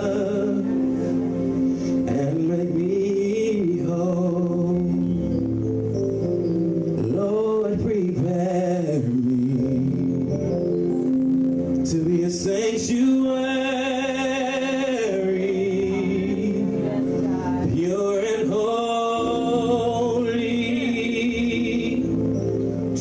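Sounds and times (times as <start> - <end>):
sustained music accompaniment: 0.0 - 23.0
person singing long wavering notes: 11.9 - 23.0.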